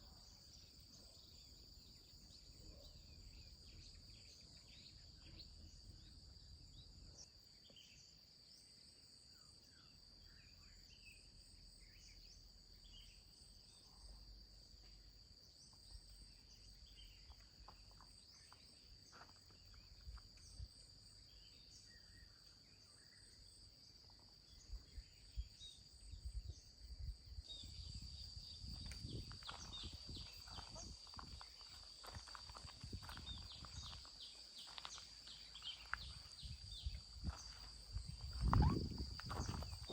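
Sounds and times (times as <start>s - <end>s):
high-pitched insect chorus: 0.0s - 39.9s
bird chirps: 27.4s - 39.9s.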